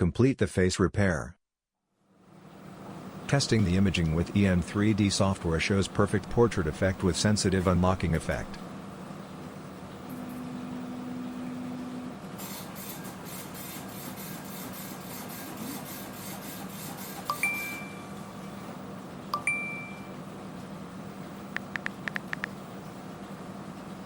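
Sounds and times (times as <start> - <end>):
bright electronic dings: 17.3 - 18.1, 19.4 - 20.2.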